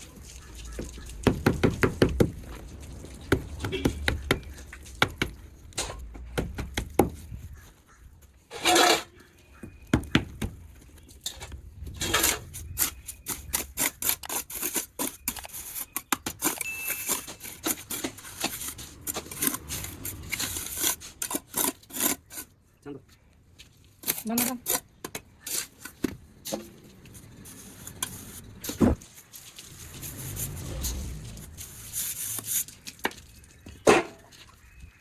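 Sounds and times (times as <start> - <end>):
tool scraping: 8.5 - 9.2, 12.0 - 22.5.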